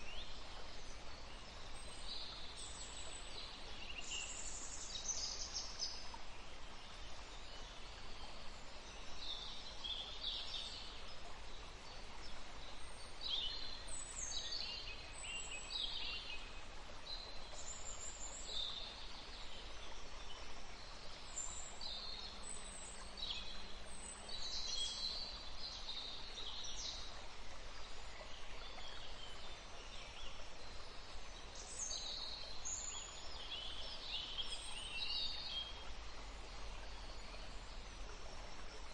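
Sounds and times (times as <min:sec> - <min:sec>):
background hiss: 0:00.0 - 0:38.9.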